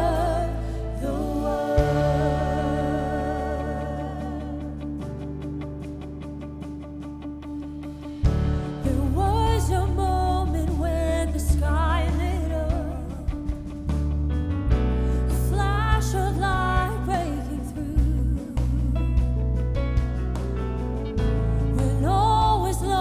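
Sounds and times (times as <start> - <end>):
wordless vocal line: 0.0 - 5.4
band with heavy bass: 0.0 - 23.0.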